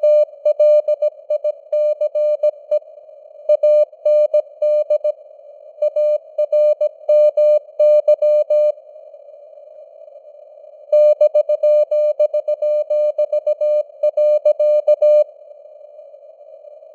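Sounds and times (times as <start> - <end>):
morse code beeps: 5.8 - 8.7, 11.0 - 15.2.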